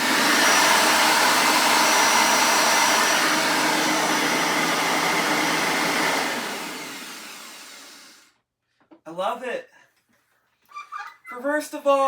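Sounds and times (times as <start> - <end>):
vacuum cleaner running: 0.0 - 8.3.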